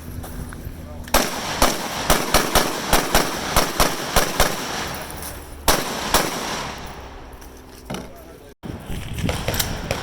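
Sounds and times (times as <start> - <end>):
rifle shots echoing: 1.1 - 7.3.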